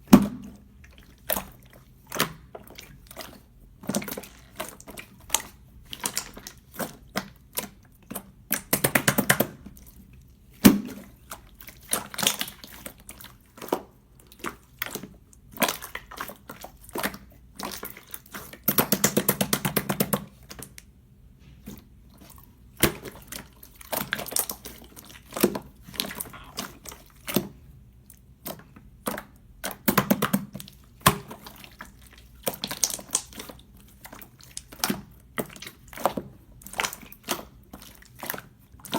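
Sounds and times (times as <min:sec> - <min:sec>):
slime squishing and popping: 0:22.7 - 0:27.5, 0:28.2 - 0:38.9.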